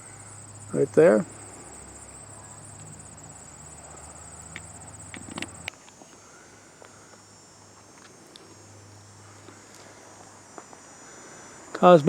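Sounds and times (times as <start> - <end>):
faint clicks: 0.0 - 6.0
low background hum: 0.0 - 7.1
insects trilling: 0.0 - 12.0.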